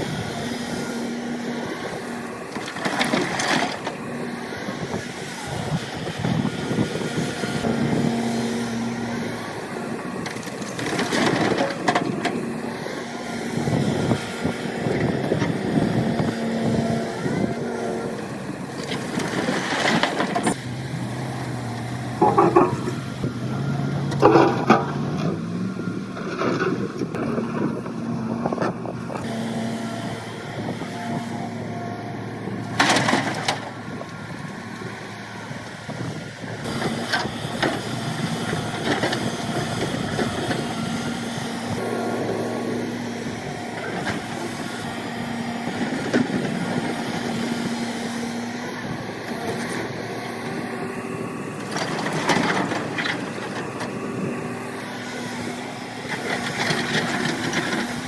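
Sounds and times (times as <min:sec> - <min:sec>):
excavator engine running: 0:00.0 - 0:58.0
bucket crunching and scraping rock: 0:22.2 - 0:23.2, 0:24.1 - 0:25.5.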